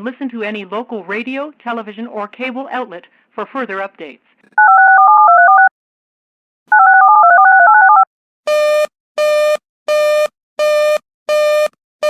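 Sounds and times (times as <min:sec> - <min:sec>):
touch-tone dialing tones: 0:04.6 - 0:05.7, 0:06.7 - 0:09.6.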